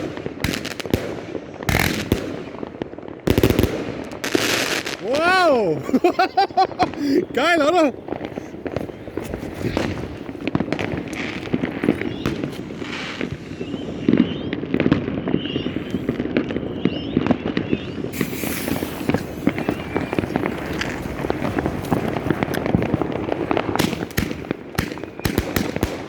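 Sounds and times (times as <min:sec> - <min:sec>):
fireworks bangs and crackling: 0:00.0 - 0:26.0
firework whistles: 0:08.1 - 0:23.0, 0:23.8 - 0:25.8.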